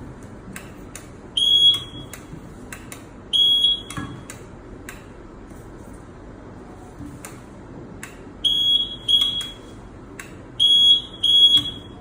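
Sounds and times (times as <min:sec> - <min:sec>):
high-pitched buzzer beeps: 0:01.4 - 0:02.2, 0:03.4 - 0:04.0, 0:08.4 - 0:09.7, 0:10.6 - 0:12.0.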